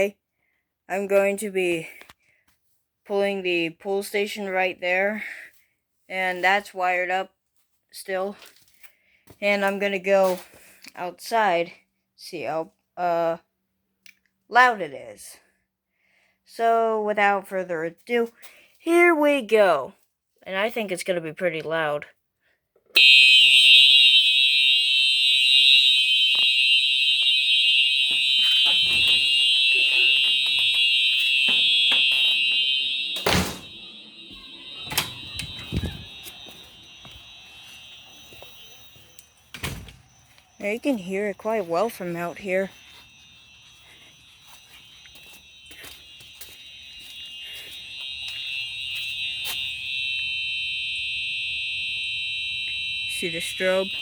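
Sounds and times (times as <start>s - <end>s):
fire alarm tone: 23.0s - 54.0s.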